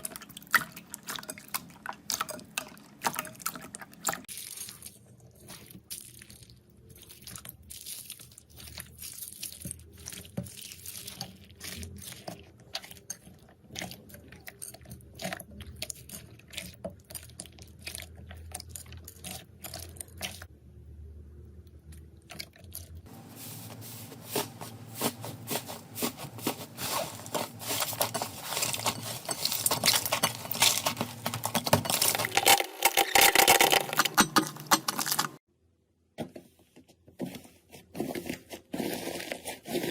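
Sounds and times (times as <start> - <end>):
slime crackling by hand: 3.0 - 20.5.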